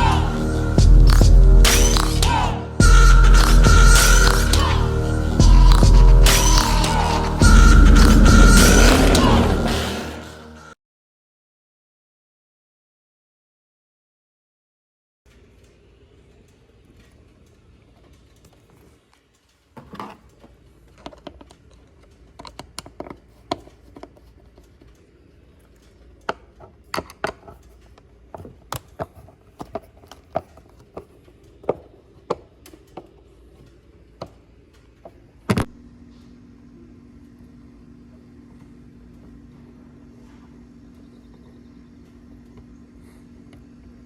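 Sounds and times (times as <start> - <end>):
steady low hum: 0.0 - 10.8, 20.3 - 44.0
hand tools clicking and tapping: 25.9 - 35.6.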